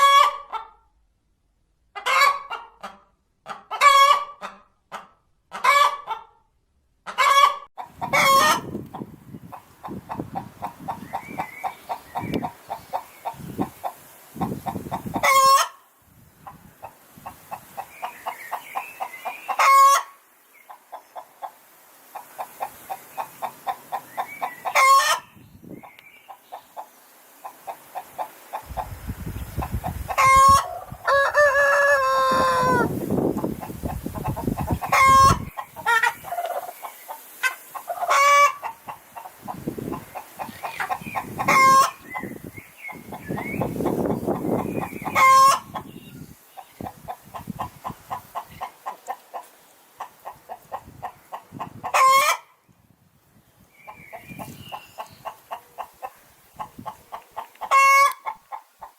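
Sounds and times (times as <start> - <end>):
hens cackling: 0.0 - 0.8, 2.0 - 6.4, 7.0 - 15.8, 16.4 - 46.0, 46.6 - 52.6, 53.9 - 58.9
rooster crowing: 30.3 - 33.0.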